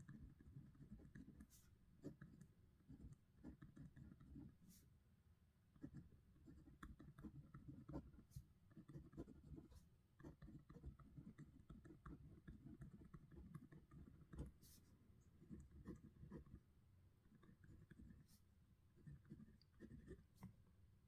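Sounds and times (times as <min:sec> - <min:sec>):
pen scratching on paper: 0:00.1 - 0:04.8, 0:05.8 - 0:16.6, 0:17.3 - 0:18.4, 0:19.0 - 0:20.5.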